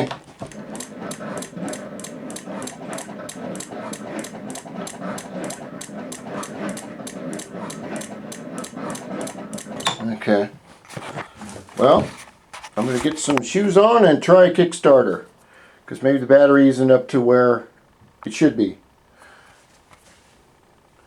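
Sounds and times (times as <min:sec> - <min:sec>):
electric starter cranking engine: 0:00.0 - 0:12.0.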